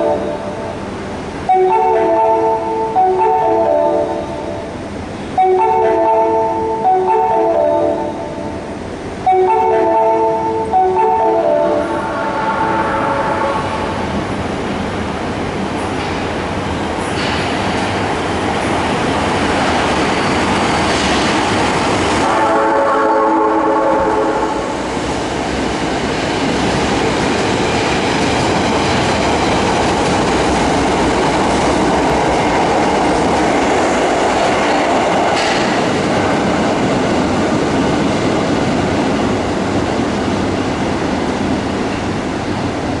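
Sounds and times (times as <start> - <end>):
train horn: 0.0 - 0.6, 1.5 - 4.6, 5.3 - 8.4, 9.2 - 14.0, 22.2 - 24.9
train wheels rumbling on rail: 0.0 - 43.0.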